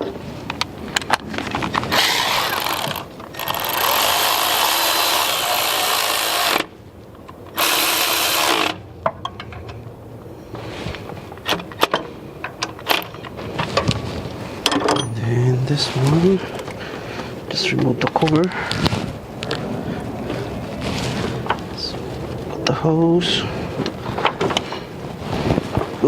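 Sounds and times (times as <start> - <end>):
power tool running bolts: 1.7 - 6.7, 7.5 - 8.8
metal clicks and knocks: 9.0 - 9.9, 11.3 - 14.0, 14.6 - 15.2.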